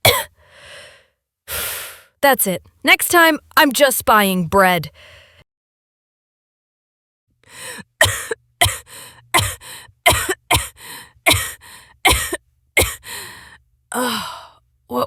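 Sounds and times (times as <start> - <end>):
woman coughing: 0.0 - 0.4, 8.0 - 13.0
woman breathing: 0.4 - 2.2, 4.9 - 5.4, 7.4 - 8.0, 8.8 - 10.0, 10.7 - 12.0, 13.0 - 14.6.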